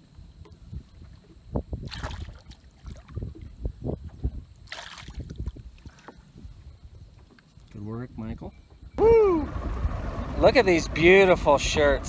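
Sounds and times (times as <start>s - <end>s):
water splashing: 1.0s - 3.6s, 4.6s - 6.1s.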